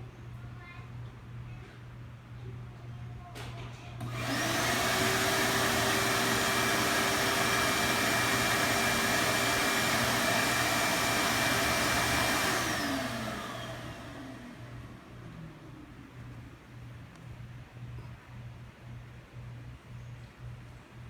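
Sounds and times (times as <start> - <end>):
vacuum cleaner motor whine: 4.0 - 16.4.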